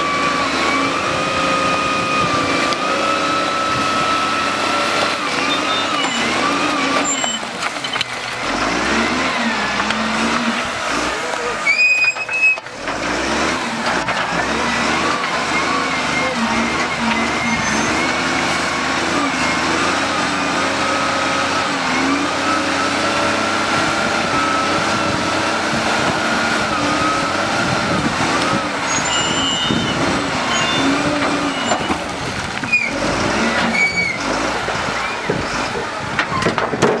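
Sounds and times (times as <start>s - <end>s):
vehicle engines running: 0.0s - 37.0s
short high squeals: 5.2s - 8.1s, 11.6s - 12.8s, 15.6s - 18.2s, 28.8s - 33.0s, 33.6s - 34.4s.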